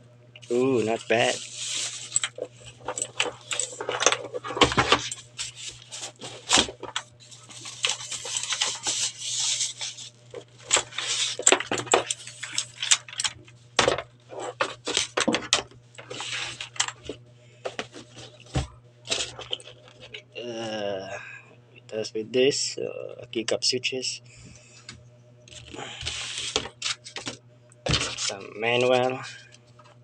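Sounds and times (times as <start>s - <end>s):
packaging rustling and crinkling: 0.5s - 13.5s, 14.3s - 20.2s, 25.5s - 30.0s
clicks and knocks of parts: 2.0s - 9.0s, 10.3s - 20.2s.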